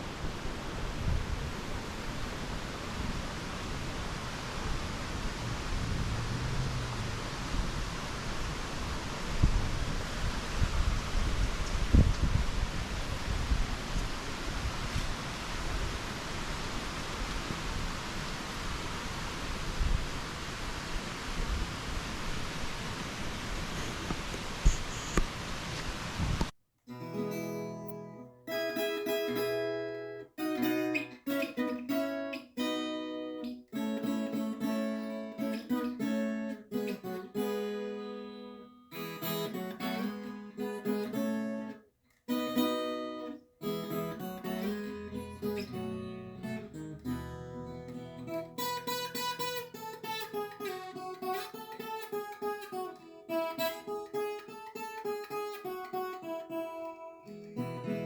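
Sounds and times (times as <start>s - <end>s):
rushing water: 0.0s - 26.5s
acoustic guitar music: 26.9s - 58.0s.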